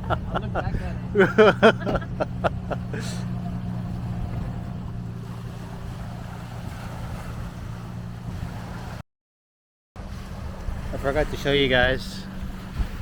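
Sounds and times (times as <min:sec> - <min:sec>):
motor running with low rumble: 0:00.0 - 0:09.0, 0:10.0 - 0:13.0
wind noise: 0:10.2 - 0:13.0.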